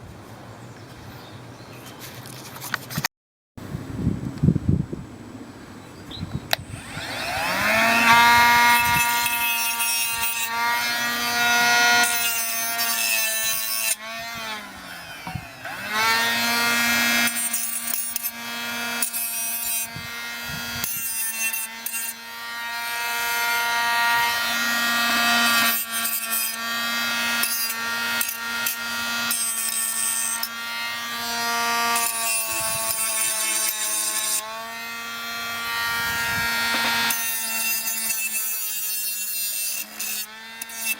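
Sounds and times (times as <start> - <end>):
angle grinder whining: 6.5 - 40.9.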